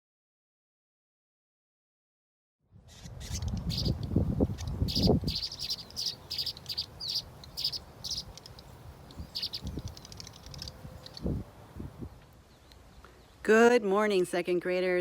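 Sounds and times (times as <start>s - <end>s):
small birds chirping: 2.8s - 11.8s, 12.4s - 13.5s.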